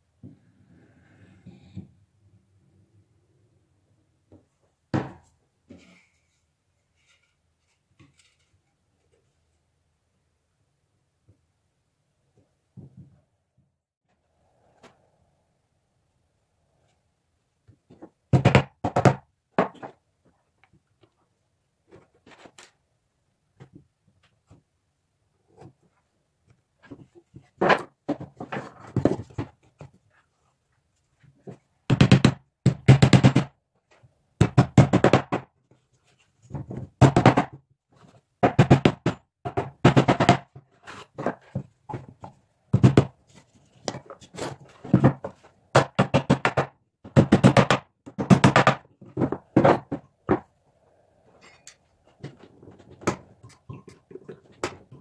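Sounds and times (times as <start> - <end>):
hand tool scraping wood: 40.7 - 41.6.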